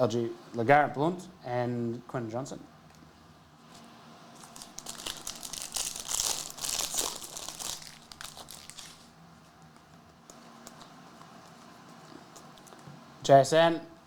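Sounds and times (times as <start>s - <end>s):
foil wrapper crinkling: 4.4s - 9.8s.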